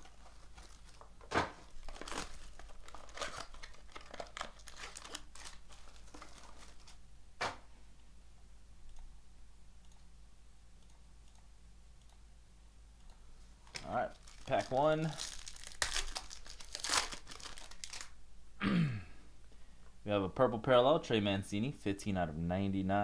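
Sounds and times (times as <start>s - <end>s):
plastic wrapping crinkling: 0.0s - 7.0s, 13.7s - 18.2s.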